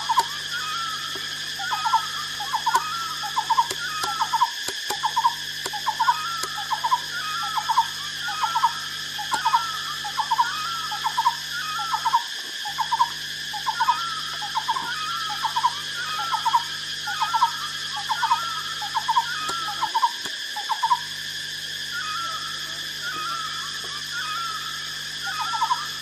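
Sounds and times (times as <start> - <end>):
high-pitched drone: 0.0 - 26.0
repeated animal call: 0.0 - 26.0.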